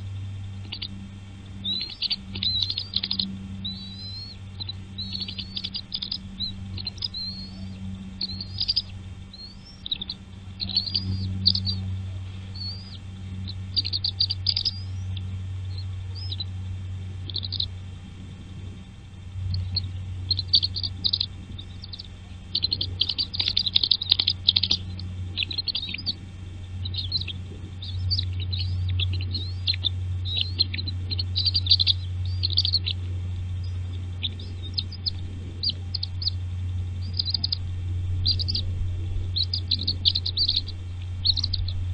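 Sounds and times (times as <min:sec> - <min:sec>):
small birds chirping: 0:00.0 - 0:41.9
steady low hum: 0:00.0 - 0:41.9.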